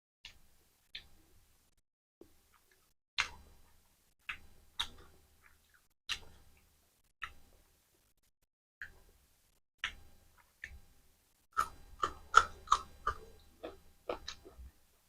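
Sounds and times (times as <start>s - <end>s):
wet mouth clicks and smacks chewing: 4.2s - 6.4s, 11.6s - 14.7s.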